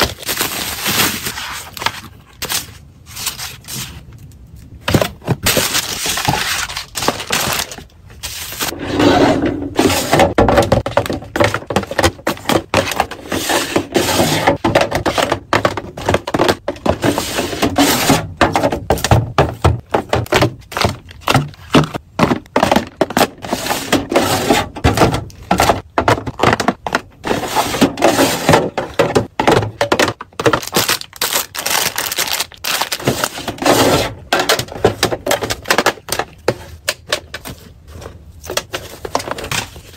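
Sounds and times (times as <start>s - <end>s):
packaging crackling and rustling: 0.0s - 8.8s, 29.9s - 33.8s
items tapping and knocking: 9.6s - 31.0s, 33.0s - 39.9s.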